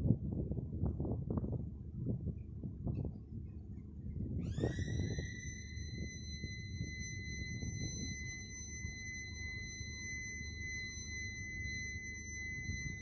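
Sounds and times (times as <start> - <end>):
high-pitched warning siren: 4.2 - 13.0.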